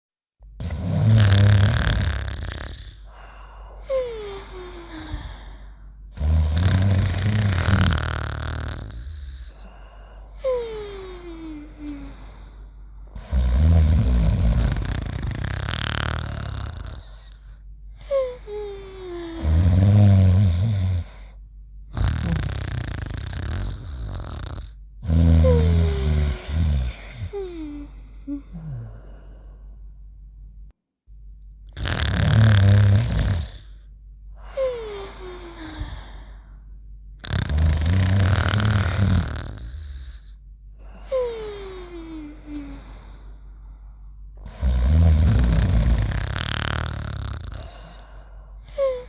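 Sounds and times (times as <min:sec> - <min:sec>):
cartoon snoring: 0:00.6 - 0:03.1, 0:06.1 - 0:09.6, 0:13.1 - 0:17.4, 0:19.3 - 0:21.2, 0:21.9 - 0:28.9, 0:31.7 - 0:33.8, 0:37.2 - 0:40.4, 0:44.4 - 0:48.0.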